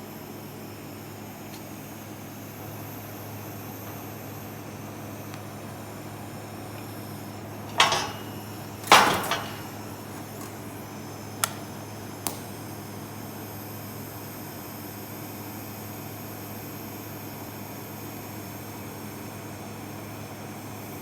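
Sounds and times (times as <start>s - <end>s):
steady electrical hum: 0.0s - 14.3s
metal-on-steel clanks: 7.6s - 10.7s.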